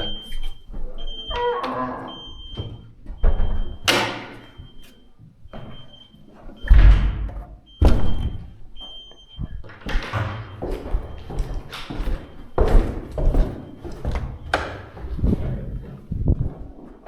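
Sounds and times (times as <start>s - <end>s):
alarm keypad beeping: 0.0s - 15.3s
loud thuds: 6.6s - 16.7s.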